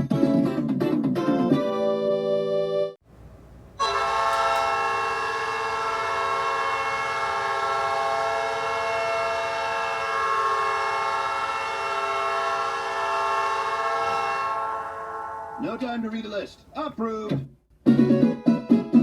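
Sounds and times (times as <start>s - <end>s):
goal horn: 3.8s - 16.1s.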